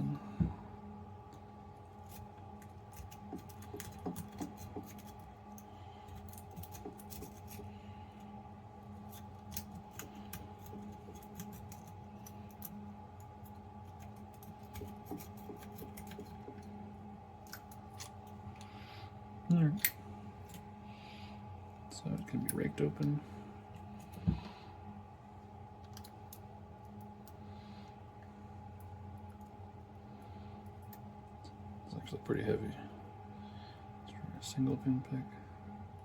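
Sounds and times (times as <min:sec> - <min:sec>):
faint steady hum: 0:00.0 - 0:36.0.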